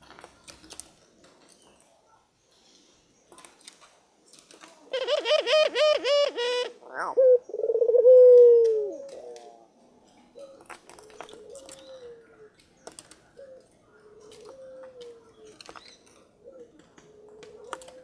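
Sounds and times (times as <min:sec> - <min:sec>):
bird calling with cooing note: 0:04.9 - 0:18.0.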